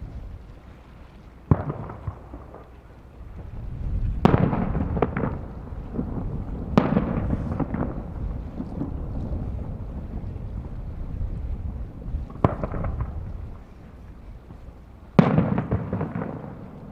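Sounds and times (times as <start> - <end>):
wind buffeting microphone: 0.0 - 16.9
firework shells booming: 1.5 - 2.6, 4.2 - 9.1, 12.3 - 13.3, 15.2 - 16.9
firework pops and crackle: 1.5 - 2.8, 3.4 - 9.8, 12.3 - 13.6, 15.2 - 16.9.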